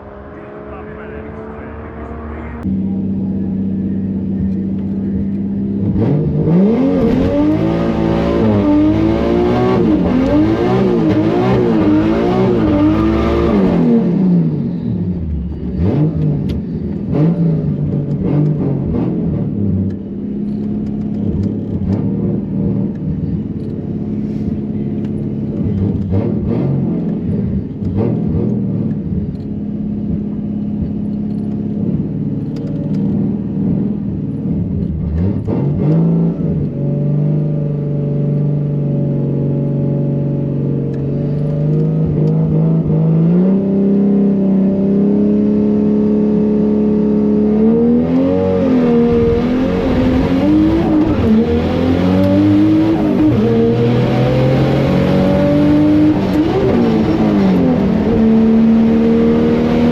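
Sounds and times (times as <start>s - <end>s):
car engine idling and revving: 0.0s - 59.9s.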